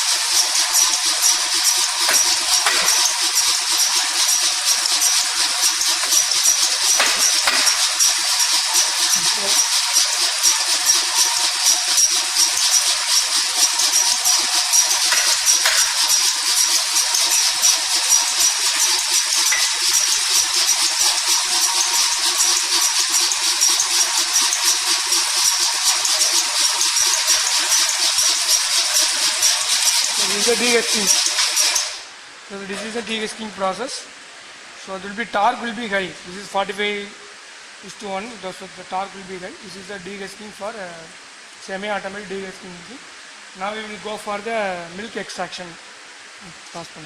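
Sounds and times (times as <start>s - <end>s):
machine rattling hiss: 0.0s - 34.2s.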